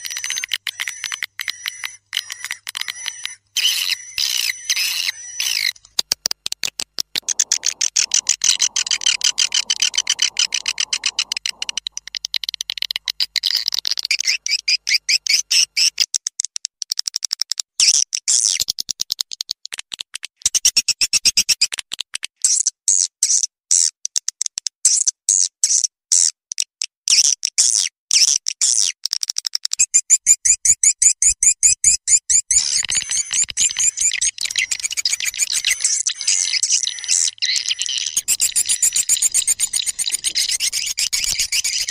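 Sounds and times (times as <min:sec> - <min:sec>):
high-pitched bird twittering chirps: 0:00.0 - 0:05.8, 0:07.2 - 0:16.0, 0:29.8 - 0:41.9.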